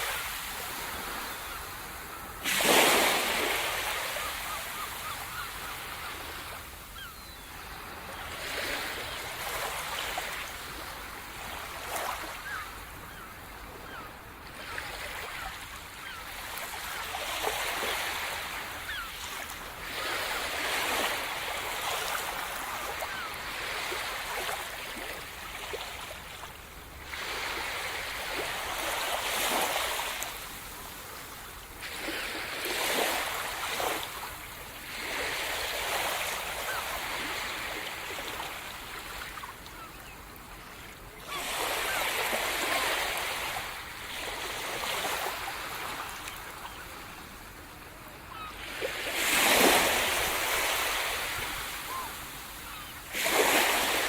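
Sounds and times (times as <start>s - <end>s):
waves breaking on shore: 0.0s - 54.0s.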